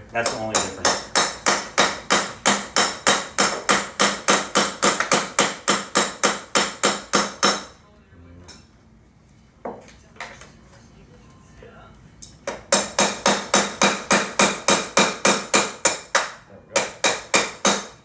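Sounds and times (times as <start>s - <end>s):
hammer tapping on metal scraper: 0.2s - 7.7s.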